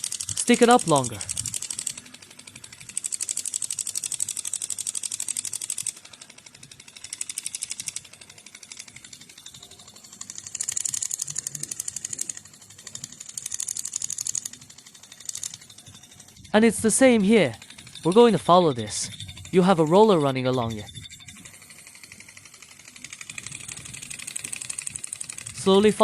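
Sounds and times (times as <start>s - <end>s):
facial machine handpiece clicking: 0.0s - 2.0s, 2.8s - 6.0s, 6.9s - 8.1s, 10.3s - 14.6s, 15.2s - 15.6s, 23.0s - 26.0s.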